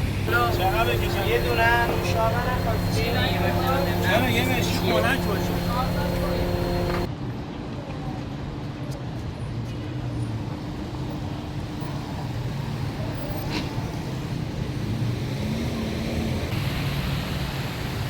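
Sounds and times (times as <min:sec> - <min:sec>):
low hum: 0:00.0 - 0:07.1
road traffic rumble: 0:00.0 - 0:07.5, 0:08.4 - 0:18.0.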